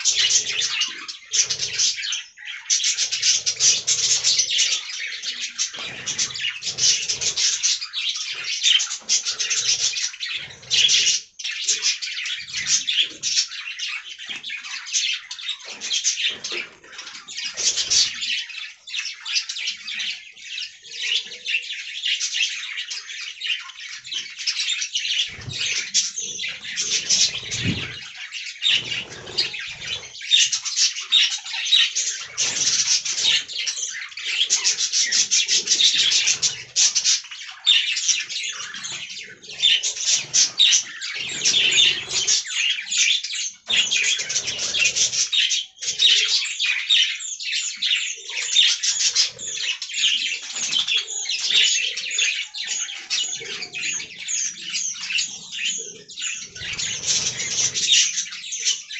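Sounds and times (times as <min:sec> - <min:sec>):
budgerigars chattering: 0:00.0 - 0:58.9.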